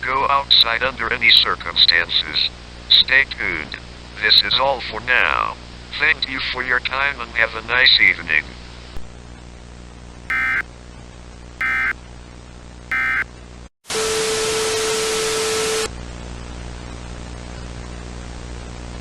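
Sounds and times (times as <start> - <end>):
loud static with low tone: 10.3 - 10.6
screeching data tones: 10.3 - 10.6, 11.6 - 11.9, 12.9 - 13.2.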